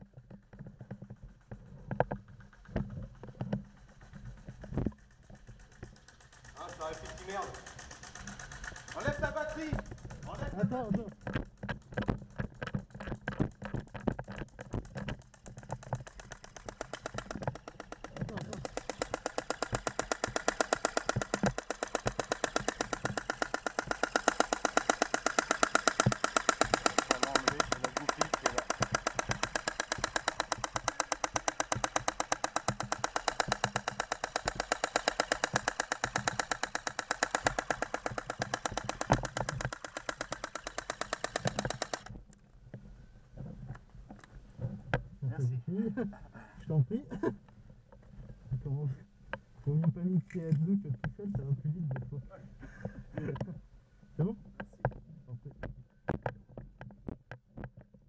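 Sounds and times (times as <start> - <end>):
airsoft gun firing full auto: 5.0 - 10.9, 15.2 - 42.1
mechanical clicking: 13.0 - 42.1.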